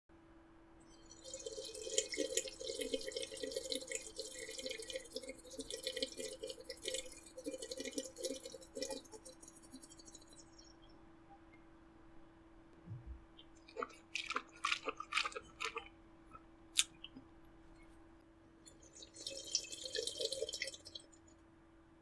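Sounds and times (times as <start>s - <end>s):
person slurping water: 1.2s - 10.3s, 13.0s - 17.2s, 19.0s - 21.2s.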